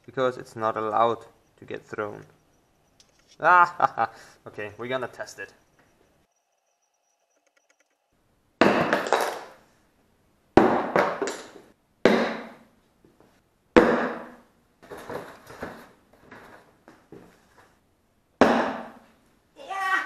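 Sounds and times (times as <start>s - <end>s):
tomahawk hitting target: 8.6s - 9.5s, 10.6s - 11.3s, 12.0s - 12.6s, 13.8s - 14.4s, 18.4s - 19.0s.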